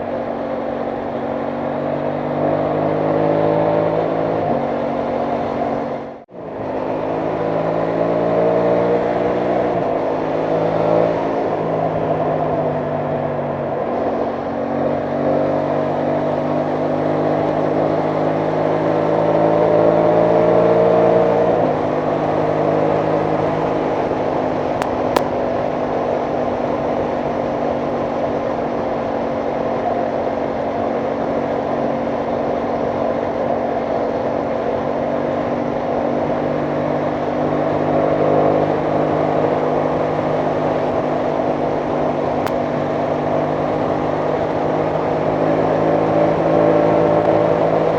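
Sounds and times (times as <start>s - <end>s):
motorcycle engine revving: 37.5s - 47.9s.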